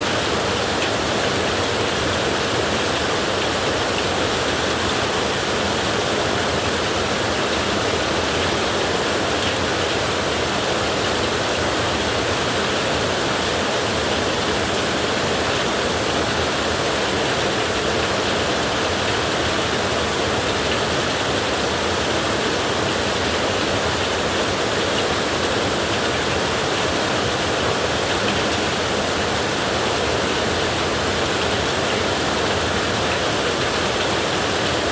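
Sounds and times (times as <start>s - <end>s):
heavy rain on a tin roof: 0.0s - 34.9s.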